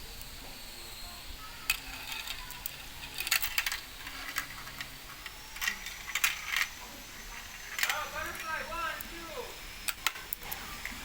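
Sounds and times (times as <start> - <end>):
marbles clattering down marble run: 1.7 - 6.7, 7.4 - 8.5.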